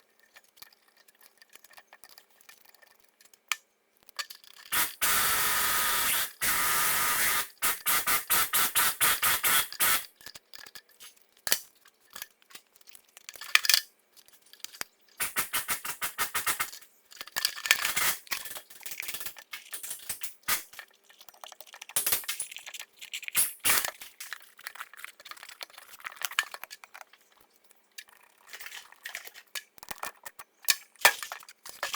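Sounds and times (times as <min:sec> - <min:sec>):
metallic clicks and rattles: 0:00.1 - 0:04.8, 0:07.6 - 0:31.9
dense hissing burst: 0:04.8 - 0:10.1, 0:15.2 - 0:16.7.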